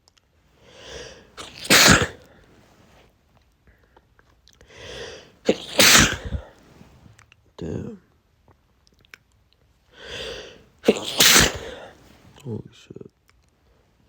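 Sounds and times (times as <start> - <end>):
drawn-in breath: 0.6 - 1.6, 4.6 - 6.5, 10.0 - 12.0
man sneezing: 0.8 - 2.2, 4.9 - 6.5, 10.0 - 12.0.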